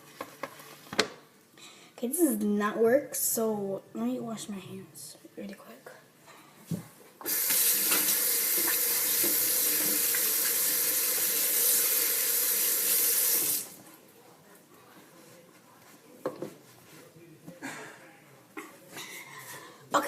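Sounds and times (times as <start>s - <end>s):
tap running into a sink: 7.2s - 11.4s.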